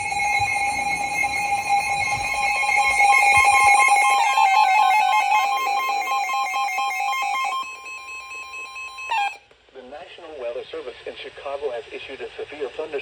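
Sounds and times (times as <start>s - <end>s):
two-tone electronic alert tone: 0.0s - 9.4s.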